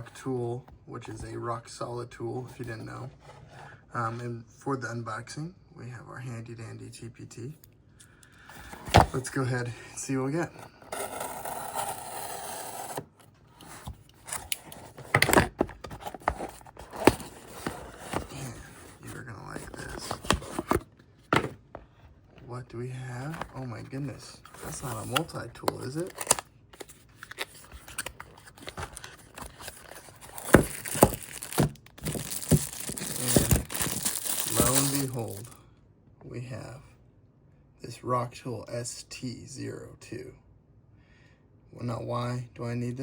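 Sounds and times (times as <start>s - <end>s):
box being cut scraping: 10.8s - 15.3s
packaging rustling: 13.7s - 21.6s, 24.5s - 35.6s.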